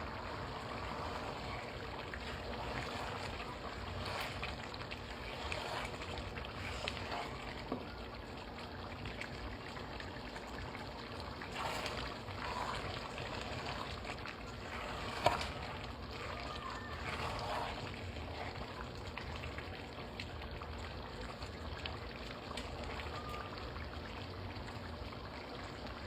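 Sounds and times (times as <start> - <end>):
rice bubbling in a pot: 0.0 - 26.0.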